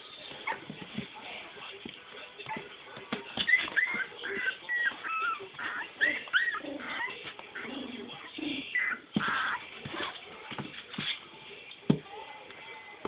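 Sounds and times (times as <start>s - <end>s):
puppies whimpering and squeaking: 3.4s - 9.7s.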